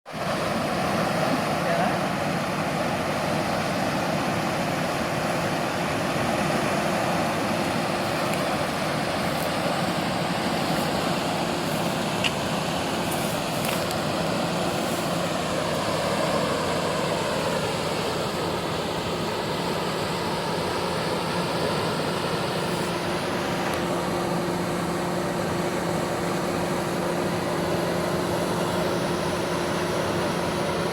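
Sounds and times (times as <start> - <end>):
motor humming steadily: 0.1 - 30.9.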